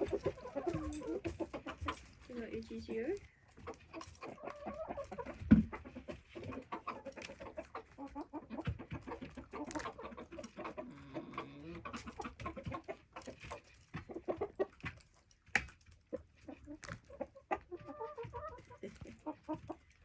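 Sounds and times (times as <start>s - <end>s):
hens clucking softly: 0.0s - 20.0s.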